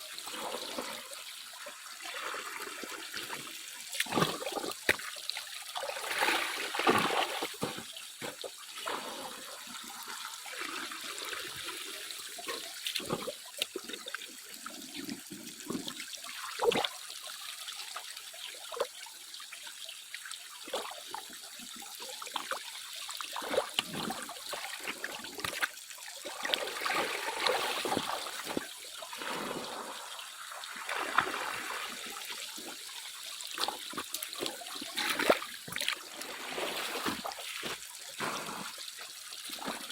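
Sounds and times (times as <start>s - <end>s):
water sloshing and splashing: 0.3s - 14.3s, 22.2s - 39.9s.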